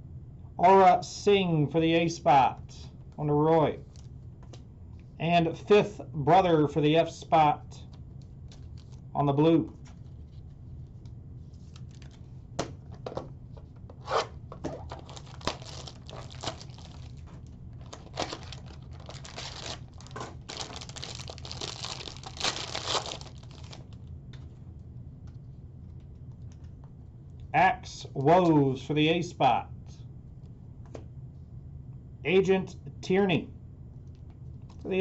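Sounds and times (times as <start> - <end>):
plastic wrapping tearing and crinkling: 14.6 - 24.0.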